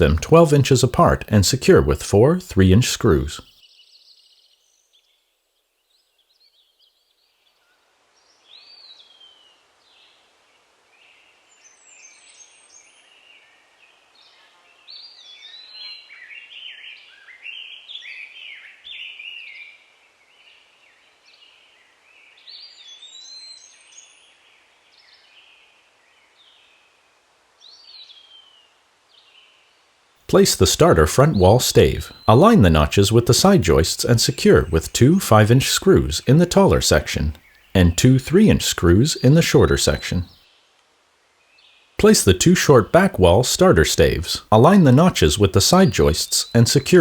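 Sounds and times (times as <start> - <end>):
faint steady hiss: 0.0 - 3.5, 23.9 - 47.0.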